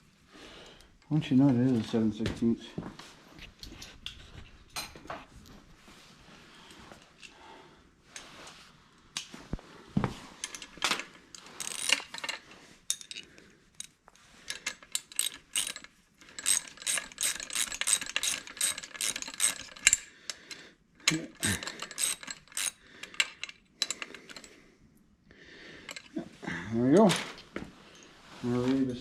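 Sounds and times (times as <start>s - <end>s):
socket ratchet clicking: 11.6s - 12.1s, 14.5s - 20.1s, 21.1s - 24.5s.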